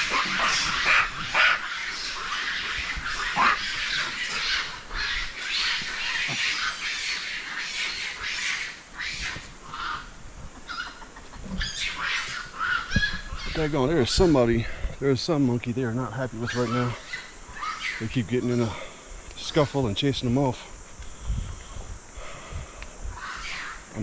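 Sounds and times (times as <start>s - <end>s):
monkeys screaming and shrieking: 0.0s - 13.8s, 16.4s - 19.0s, 23.0s - 23.9s.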